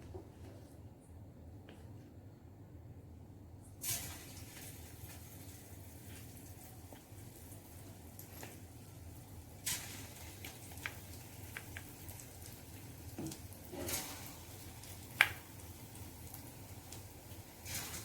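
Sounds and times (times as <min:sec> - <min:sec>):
chicken sizzling in oil: 0:03.8 - 0:18.0.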